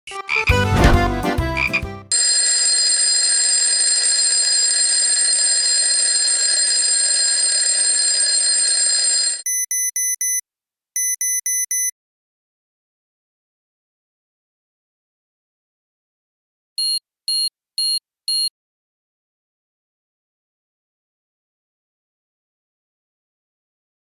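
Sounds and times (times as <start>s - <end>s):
loud alarm ring: 2.1s - 10.4s, 11.0s - 11.9s
clattering alarm clock ring: 2.4s - 10.4s
electronic alarm beeping: 9.0s - 10.4s, 11.0s - 11.9s, 16.8s - 18.5s.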